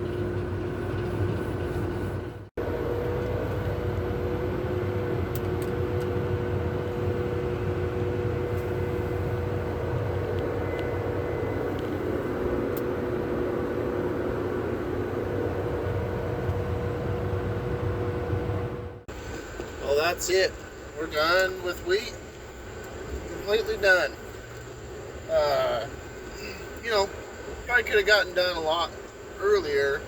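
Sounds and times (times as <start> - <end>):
combine harvester engine drone: 0.0 - 30.0.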